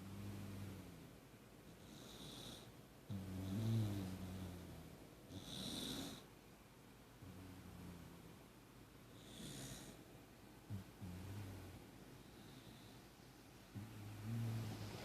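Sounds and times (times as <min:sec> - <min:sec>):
dog snoring: 0:01.7 - 0:06.3, 0:09.1 - 0:10.1, 0:13.8 - 0:15.0.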